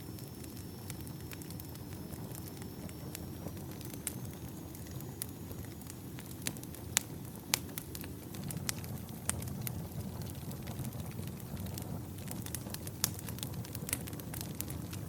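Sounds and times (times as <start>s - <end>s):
campfire crackling: 0.0s - 15.0s
low rush of flame: 0.0s - 15.0s
sharp pops and snaps: 6.4s - 15.0s.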